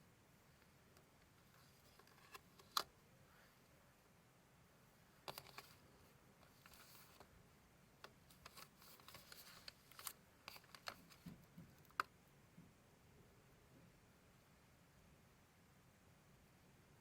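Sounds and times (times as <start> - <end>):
paper and card rustling: 1.4 - 2.9, 5.3 - 5.8, 6.4 - 7.3, 8.3 - 12.0.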